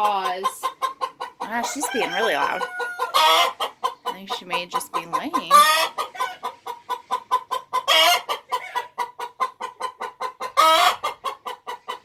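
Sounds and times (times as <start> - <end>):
hen squawking: 0.0 - 9.0
hen cackling: 0.0 - 12.0.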